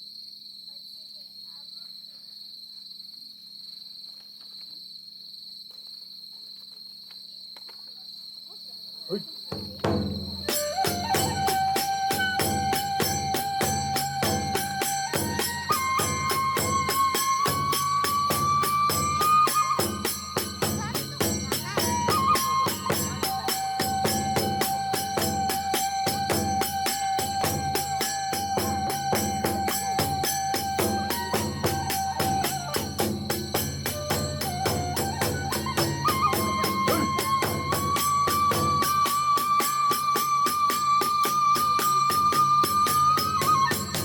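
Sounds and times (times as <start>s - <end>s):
drum beats: 9.5s - 44.0s
hand cymbal beats: 9.5s - 44.0s
bamboo flute long notes: 9.9s - 44.0s.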